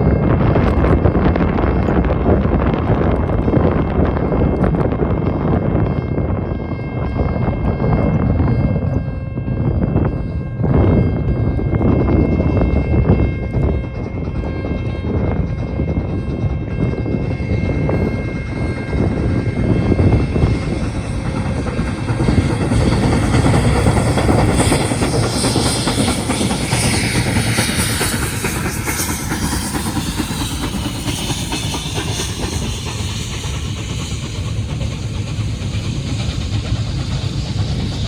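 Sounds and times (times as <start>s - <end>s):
steam train rumbling: 0.0s - 38.0s
wheels clattering on rails: 11.7s - 38.0s
steam hissing: 18.3s - 38.0s.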